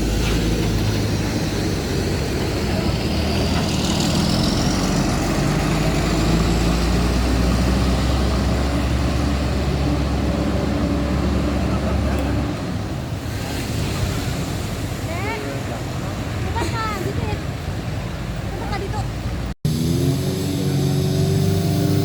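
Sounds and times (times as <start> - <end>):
diesel bus engine drone: 0.0 - 13.1, 19.3 - 22.0.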